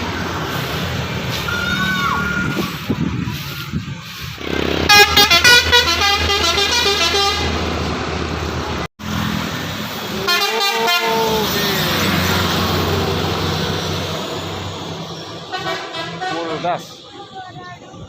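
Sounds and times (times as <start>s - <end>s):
horn blast with bending notes: 4.4s - 7.9s, 10.2s - 13.4s
musical horn stepping notes: 4.8s - 7.6s.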